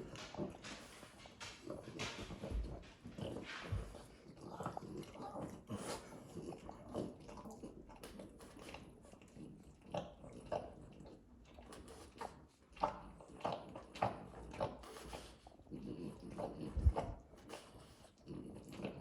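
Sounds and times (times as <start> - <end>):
dog snorting breaths: 0.0 - 10.8, 11.6 - 19.0
dog licking: 0.0 - 19.0.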